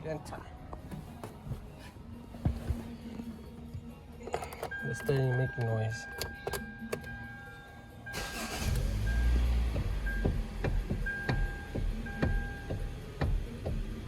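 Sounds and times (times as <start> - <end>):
car engine starting and idling: 3.2 - 14.0
clicks in steering column: 3.7 - 7.2.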